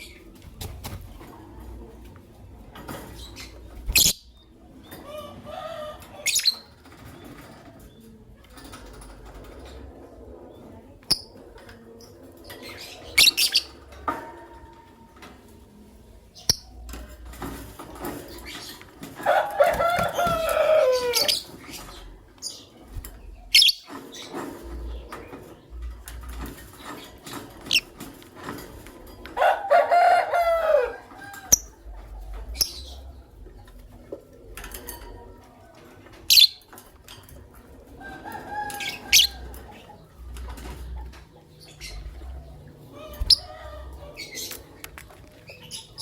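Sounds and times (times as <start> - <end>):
lovebirds sharp high chirps: 23.5 - 24.4.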